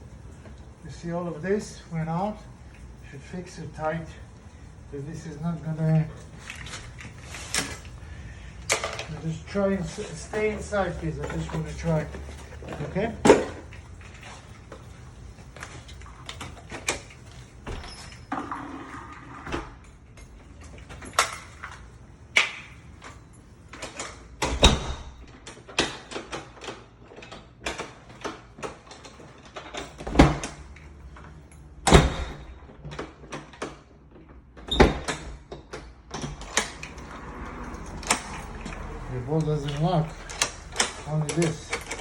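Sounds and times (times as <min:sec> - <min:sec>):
latch and lock clicks: 0:31.8 - 0:42.0.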